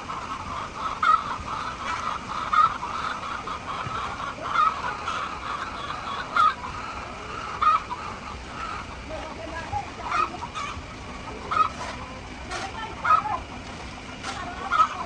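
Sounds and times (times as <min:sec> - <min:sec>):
single hen call: 0:00.0 - 0:09.0
hens clucking: 0:00.0 - 0:15.0.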